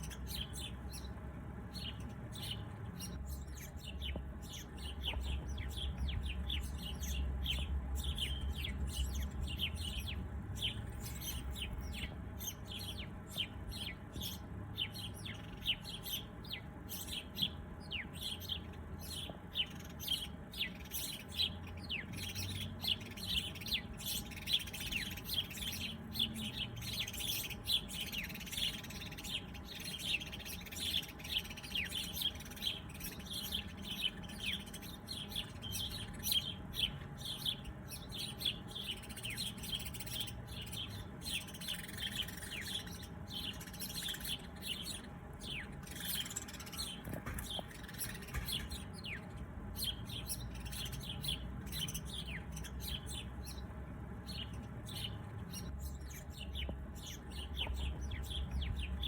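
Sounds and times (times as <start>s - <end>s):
faint low background rumble: 0.0s - 59.0s
small birds chirping: 0.0s - 59.0s.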